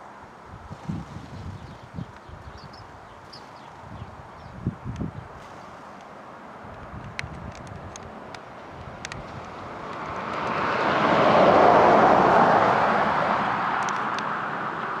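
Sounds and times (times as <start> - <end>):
vehicle passing by: 8.1 - 15.0.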